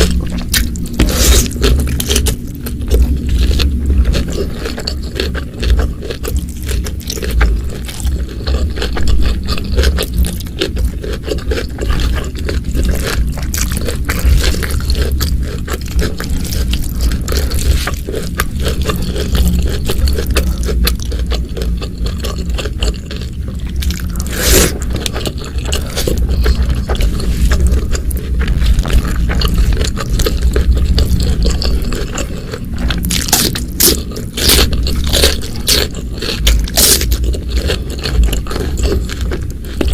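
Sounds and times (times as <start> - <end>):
chewing and crunching food: 0.0 - 39.9
low rumble: 0.0 - 39.9.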